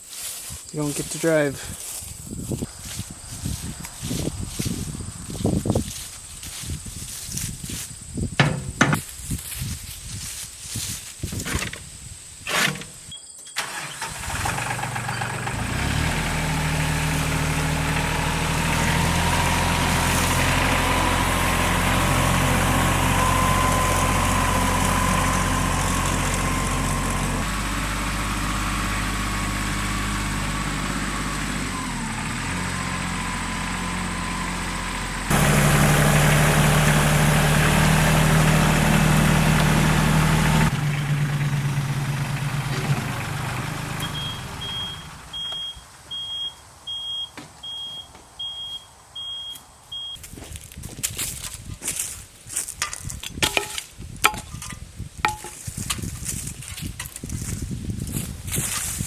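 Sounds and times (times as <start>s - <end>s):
vehicle engine running: 0.1s - 7.8s, 13.6s - 45.8s.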